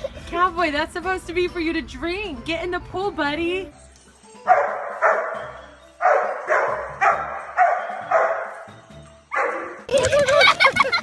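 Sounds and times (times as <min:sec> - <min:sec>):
dog barking: 0:04.5 - 0:08.7, 0:09.3 - 0:09.8.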